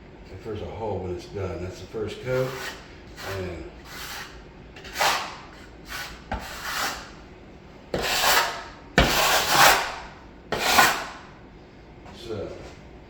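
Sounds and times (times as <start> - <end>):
drywall knife scraping compound: 2.2 - 7.2, 7.9 - 11.3.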